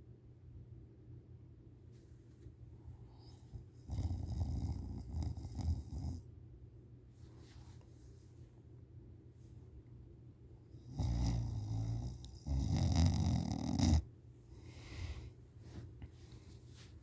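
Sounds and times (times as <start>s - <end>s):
person snoring loudly: 10.9s - 14.0s
soft breath out: 14.5s - 16.6s.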